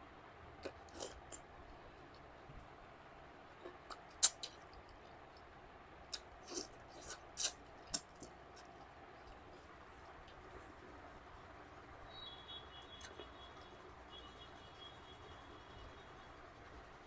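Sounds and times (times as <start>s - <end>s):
person chewing with mouth smacks: 0.6s - 1.4s, 3.6s - 5.0s, 6.1s - 9.6s.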